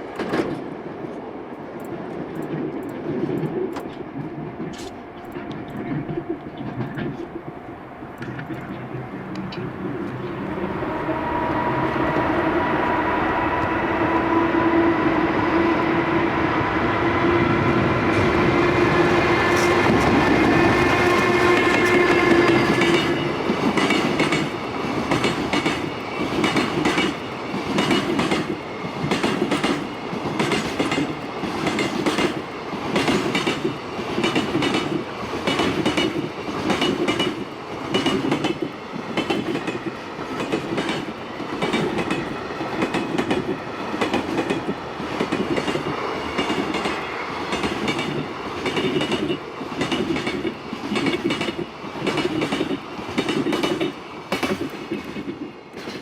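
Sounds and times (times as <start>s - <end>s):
train wheels clacking on rails: 0.0s - 12.7s, 13.5s - 56.0s.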